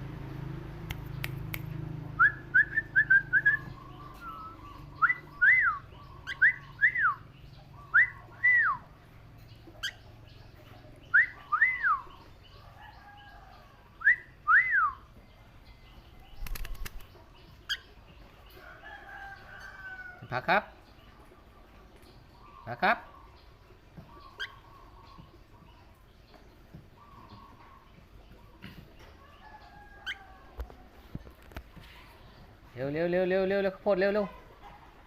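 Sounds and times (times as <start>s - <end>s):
sharp clicks: 0.9s - 1.8s.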